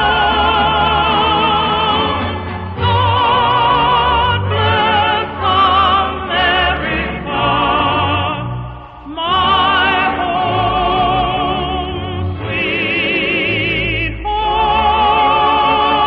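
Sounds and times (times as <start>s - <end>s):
music: 0.0s - 16.0s
operatic solo singing: 0.0s - 16.0s.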